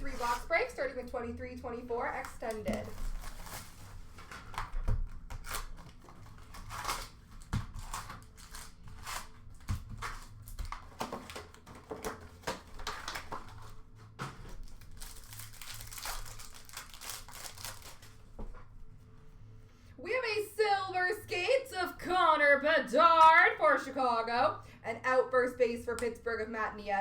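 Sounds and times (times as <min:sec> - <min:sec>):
card wrappers crinkling and tearing: 0:02.0 - 0:18.3.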